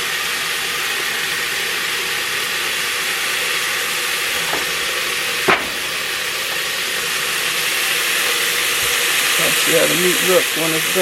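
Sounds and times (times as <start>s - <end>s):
ground beef sizzling: 0.0s - 11.0s
sharp knock: 5.4s - 6.1s.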